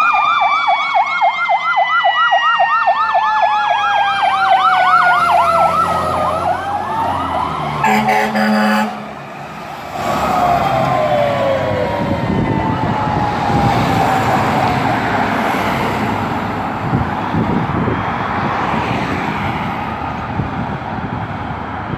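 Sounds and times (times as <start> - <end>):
truck engine and tyre noise: 0.0 - 21.9
truck air horn: 7.8 - 9.2.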